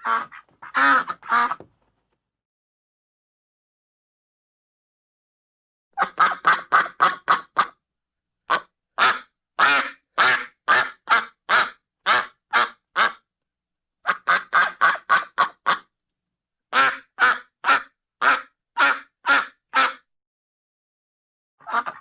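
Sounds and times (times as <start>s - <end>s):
duck quacking: 0.0s - 1.7s, 6.0s - 7.8s, 8.5s - 13.2s, 14.0s - 15.9s, 16.7s - 20.1s, 21.6s - 22.0s.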